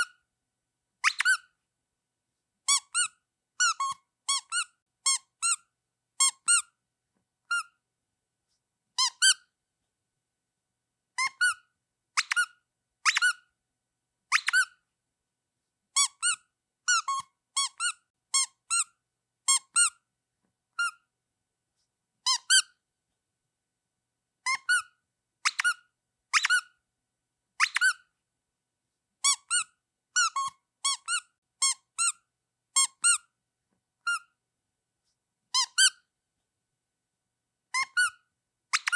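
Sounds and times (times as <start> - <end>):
rubber duck toy squeaking: 0.0 - 0.2, 1.0 - 1.6, 2.7 - 6.8, 7.5 - 7.8, 9.0 - 9.5, 11.2 - 13.5, 14.3 - 14.8, 16.0 - 20.0, 20.8 - 21.1, 22.2 - 22.8, 24.4 - 26.8, 27.6 - 28.1, 29.2 - 33.3, 34.0 - 34.4, 35.5 - 36.1, 37.7 - 38.9.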